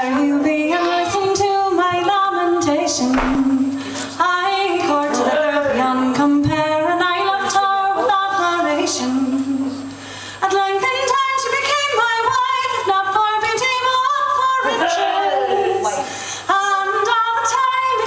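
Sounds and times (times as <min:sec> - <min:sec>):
woman singing unaccompanied ballad: 0:00.0 - 0:18.0.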